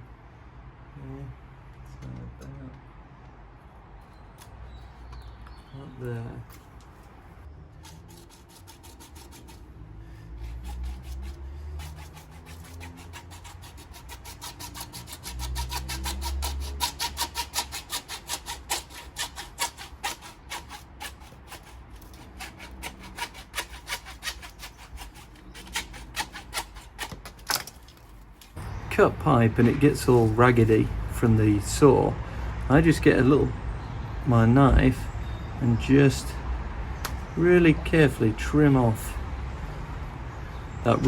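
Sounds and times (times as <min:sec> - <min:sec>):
hand saw cutting plastic pipe: 0:07.8 - 0:09.7, 0:10.3 - 0:27.7.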